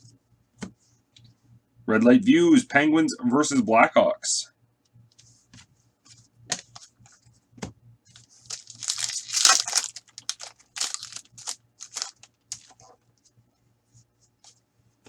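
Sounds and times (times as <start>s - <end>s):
wrapper crinkling and rustling: 8.2s - 13.0s
short crackles: 8.5s - 12.8s.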